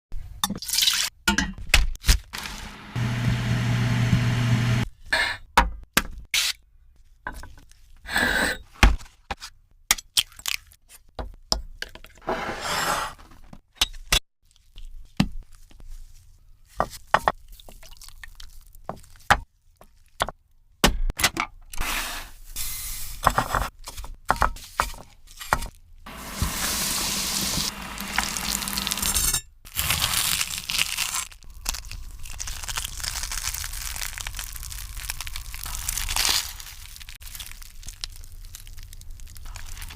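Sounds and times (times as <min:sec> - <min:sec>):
donuts sizzling in oil: 0:26.1 - 0:29.2.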